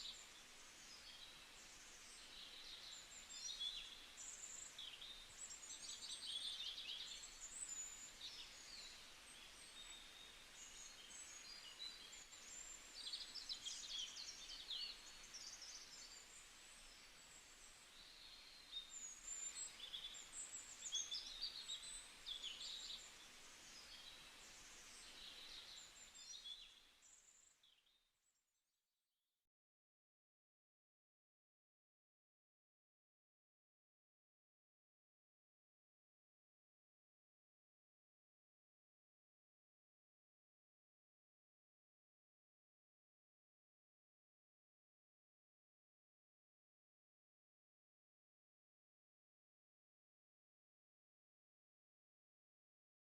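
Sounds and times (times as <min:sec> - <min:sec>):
faint outdoor hiss: 0:00.0 - 0:28.6.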